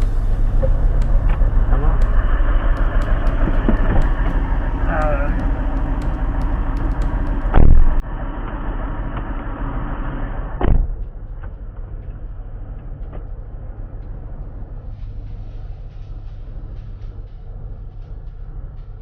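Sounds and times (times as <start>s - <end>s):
car engine and road noise: 0.0s - 16.8s.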